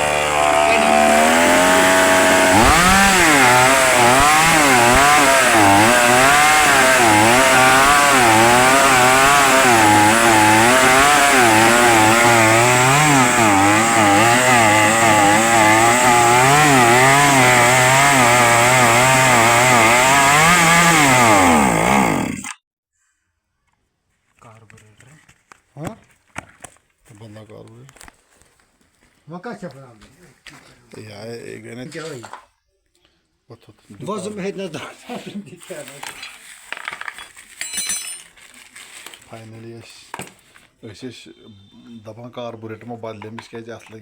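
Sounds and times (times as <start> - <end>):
chainsaw engine revving: 0.0 - 22.6.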